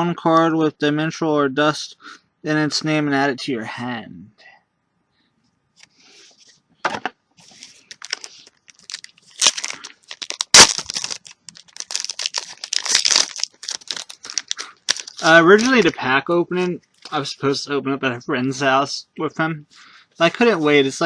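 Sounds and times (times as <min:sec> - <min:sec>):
wrapper tearing and crinkling: 0:07.5 - 0:15.9.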